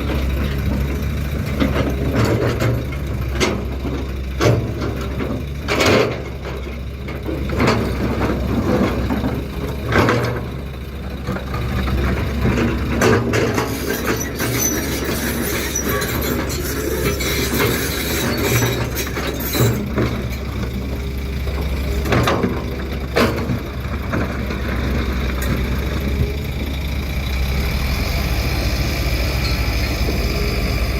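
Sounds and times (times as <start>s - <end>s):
diesel engines running: 0.0s - 30.9s
high metallic squeals: 13.8s - 19.8s, 29.2s - 30.9s.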